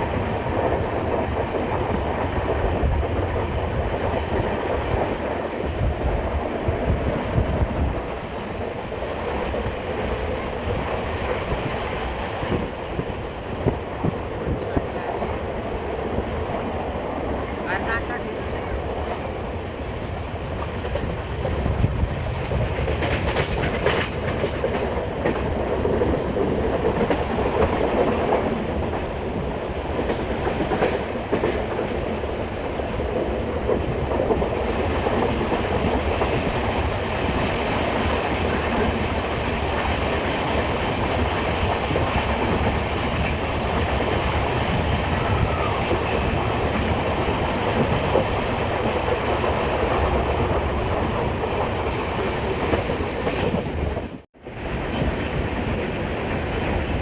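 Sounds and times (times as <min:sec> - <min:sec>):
train coaches rumbling: 0:00.0 - 0:57.0
wheels clicking over rail joints: 0:19.8 - 0:32.3.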